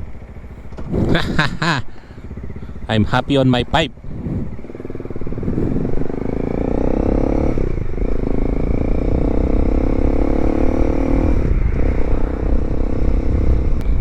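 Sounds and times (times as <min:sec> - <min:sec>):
motorcycle engine running: 0:00.0 - 0:14.0.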